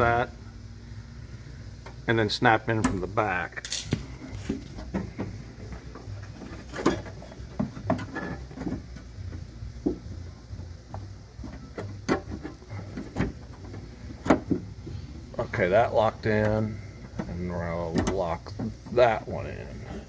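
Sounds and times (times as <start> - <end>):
low hum: 0.0 - 20.0
plastic and metal parts handled: 3.6 - 10.2.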